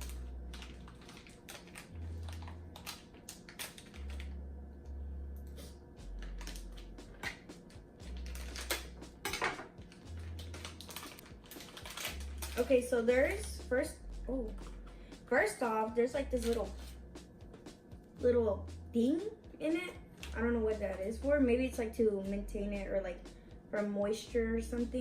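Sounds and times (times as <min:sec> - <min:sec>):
plastic wrapper crinkling: 0:00.0 - 0:04.4, 0:06.2 - 0:07.4, 0:08.1 - 0:08.9, 0:09.8 - 0:13.0.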